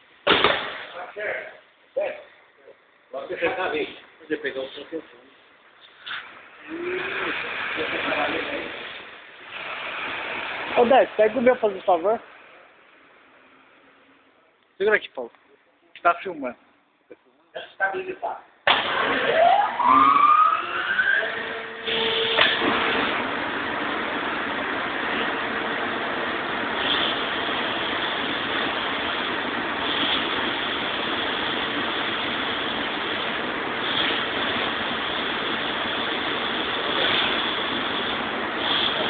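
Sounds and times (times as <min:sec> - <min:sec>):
air compressor running: 0:05.8 - 0:12.6, 0:18.7 - 0:39.0
sharp air hiss: 0:26.3 - 0:39.0.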